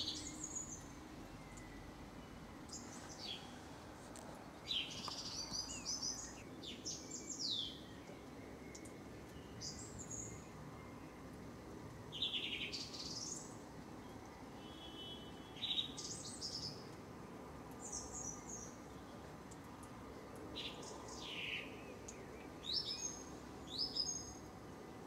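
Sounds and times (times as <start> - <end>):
blackbirds singing: 0.0 - 3.6, 4.6 - 11.2, 12.1 - 16.9, 20.6 - 24.4
low background hiss: 0.0 - 25.0.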